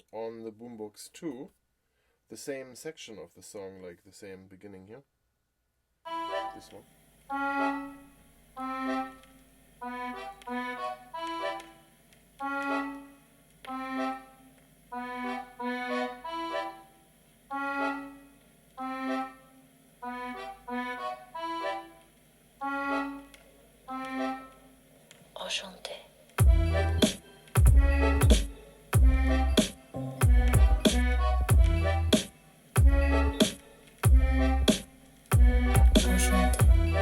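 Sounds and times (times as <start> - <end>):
dance song from portable speaker: 26.4 - 37.0.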